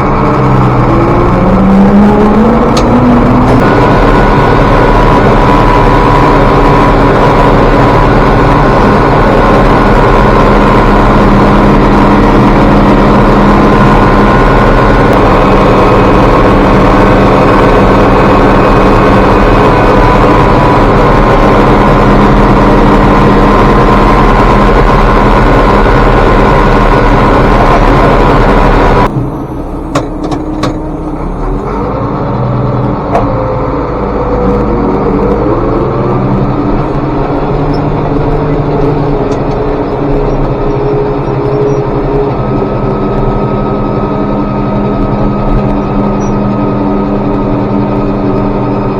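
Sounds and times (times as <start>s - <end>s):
tractor engine running: 0.0s - 48.9s.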